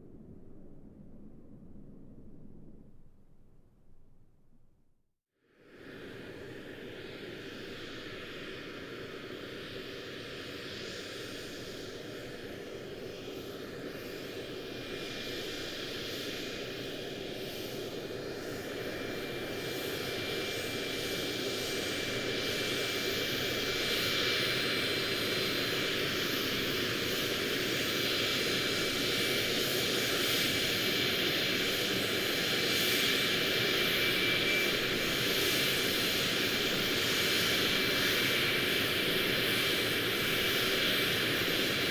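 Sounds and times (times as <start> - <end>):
jet engine rush: 0.0 - 4.8.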